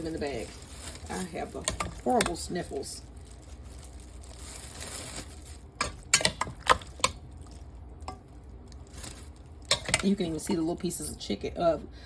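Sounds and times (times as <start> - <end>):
plastic bag rustling: 0.0 - 10.5.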